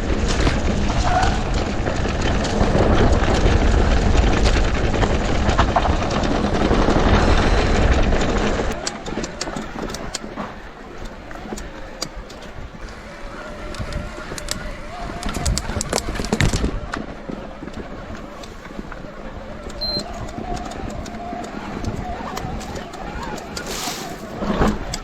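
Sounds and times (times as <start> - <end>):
bike tyres rumbling on trail: 0.0 - 25.0
sharp clicks: 8.7 - 25.0.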